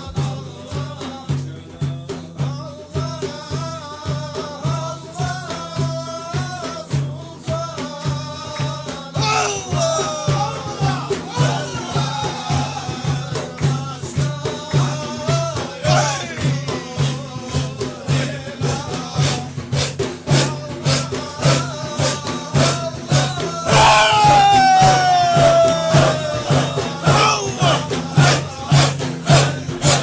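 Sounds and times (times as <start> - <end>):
rattling percussion strokes: 0.0 - 30.0
person singing melody: 9.2 - 12.5, 23.6 - 30.0
group chanting: 9.2 - 13.6, 15.2 - 16.8, 18.0 - 30.0.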